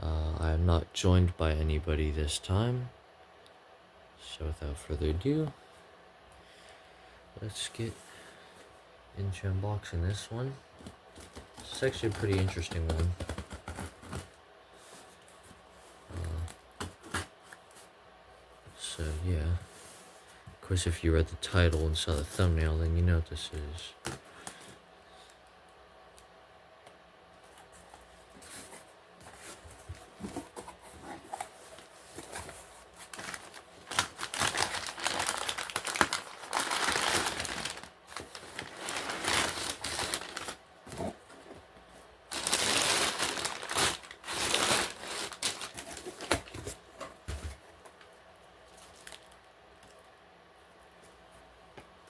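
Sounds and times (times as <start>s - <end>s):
packaging crinkling and rustling: 10.8s - 14.4s, 27.6s - 41.4s, 42.3s - 47.6s, 48.7s - 50.0s.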